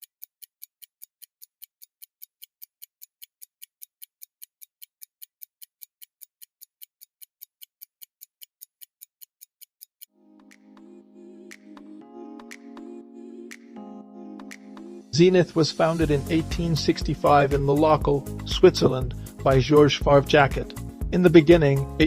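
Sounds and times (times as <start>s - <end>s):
pocket watch ticking: 0.0s - 10.1s
soft music: 10.1s - 22.0s.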